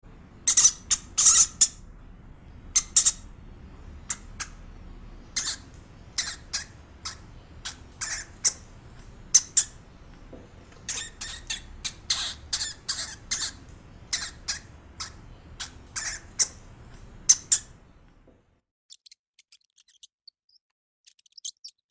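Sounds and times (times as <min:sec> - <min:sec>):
hamster squeaking: 0:00.5 - 0:01.8, 0:02.7 - 0:03.3, 0:04.1 - 0:04.6, 0:05.3 - 0:09.8, 0:10.8 - 0:17.8, 0:18.9 - 0:21.9.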